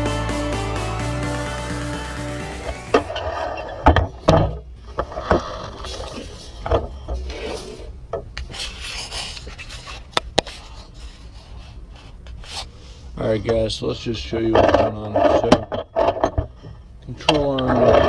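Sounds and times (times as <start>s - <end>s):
rubbing and scraping: 4.8s - 12.8s.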